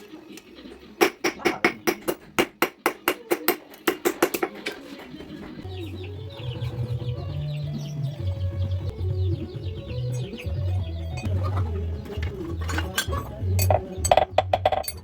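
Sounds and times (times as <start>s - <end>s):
birds chirping: 0.0s - 15.0s
low steady music: 5.0s - 15.0s.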